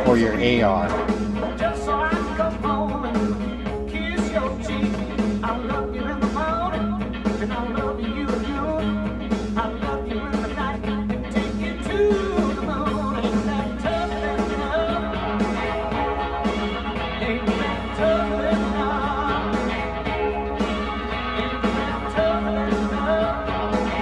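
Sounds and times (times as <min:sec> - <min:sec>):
rock music with singing: 0:00.0 - 0:24.0.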